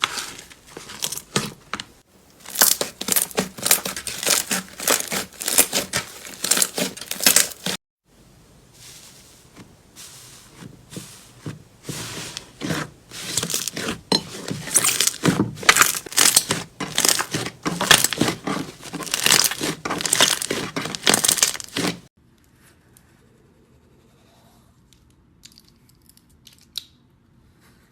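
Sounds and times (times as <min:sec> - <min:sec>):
slime crackling and crinkling: 0:00.0 - 0:07.8, 0:08.8 - 0:22.1.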